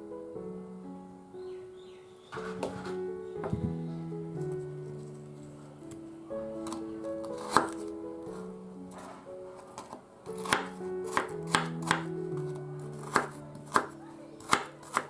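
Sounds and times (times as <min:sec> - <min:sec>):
background music: 0:00.0 - 0:15.0
knife chopping on cutting board: 0:07.4 - 0:07.8, 0:09.8 - 0:12.1, 0:13.0 - 0:15.0.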